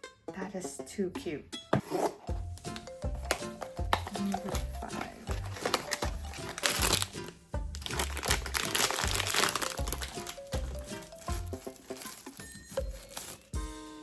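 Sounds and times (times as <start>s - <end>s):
background music with beat: 1.4s - 14.0s
packaging crinkling torn open: 4.0s - 13.6s.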